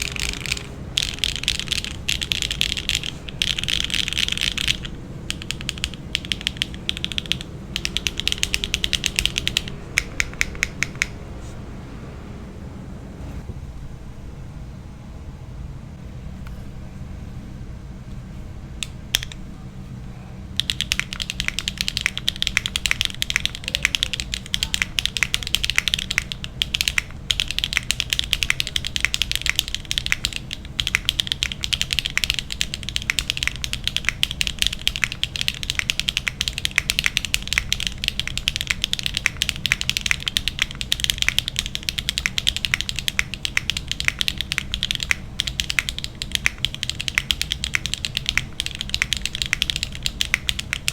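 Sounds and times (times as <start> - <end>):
fast typing on mechanical keyboard: 0.0 - 11.2, 20.6 - 50.9.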